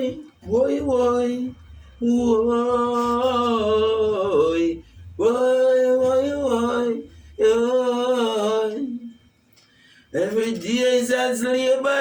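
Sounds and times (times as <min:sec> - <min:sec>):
low bass line: 0:00.0 - 0:08.7
man singing long notes: 0:00.0 - 0:09.1.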